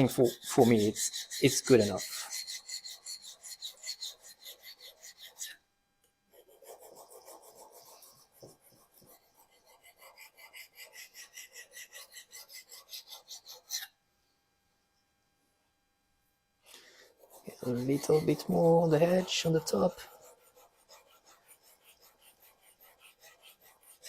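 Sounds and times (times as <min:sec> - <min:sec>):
knife scraping on sharpening stone: 0:00.1 - 0:05.6.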